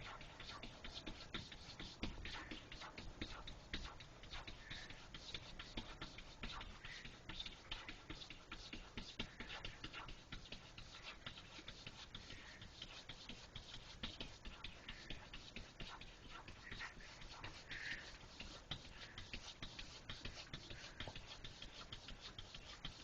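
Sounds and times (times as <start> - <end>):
cat scratching: 0.0 - 23.0.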